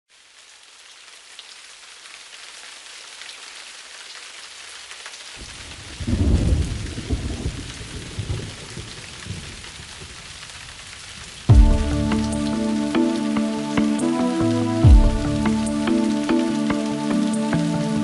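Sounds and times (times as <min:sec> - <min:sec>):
rain hiss: 0:00.1 - 0:18.0
thunder rumbling: 0:05.4 - 0:10.2.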